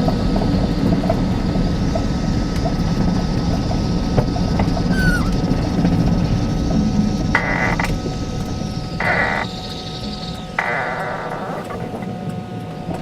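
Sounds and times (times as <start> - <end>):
drivetrain rumble with rattles: 0.0 - 13.0
electric motor whine: 4.6 - 12.8.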